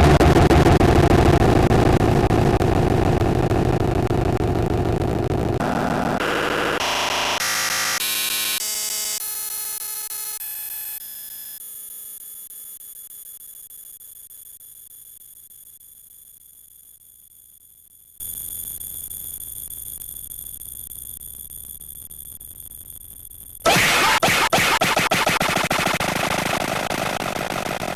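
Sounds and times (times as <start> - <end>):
distorted buzzing drone: 0.0 - 8.0, 23.7 - 27.9.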